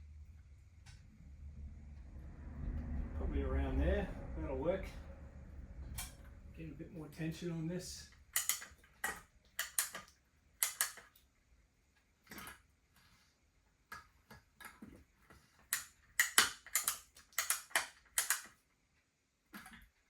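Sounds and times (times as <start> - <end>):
spring balancer ratchet clicks: 8.3 - 11.1, 15.7 - 18.5.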